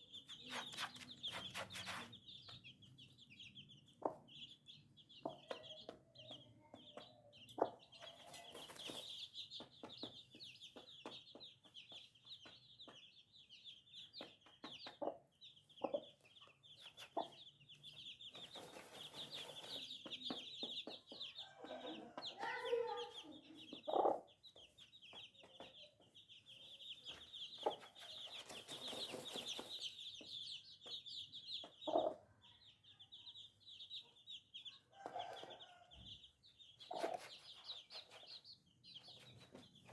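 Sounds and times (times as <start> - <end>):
baby chicks peeping: 0.0 - 39.9
hen clucking: 31.7 - 32.2, 36.8 - 38.3.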